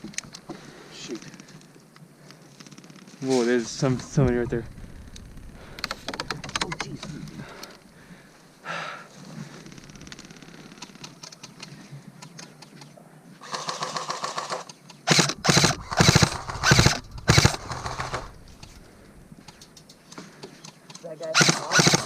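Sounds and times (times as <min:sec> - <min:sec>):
airsoft gun bursts: 0:13.4 - 0:18.8, 0:21.3 - 0:22.0.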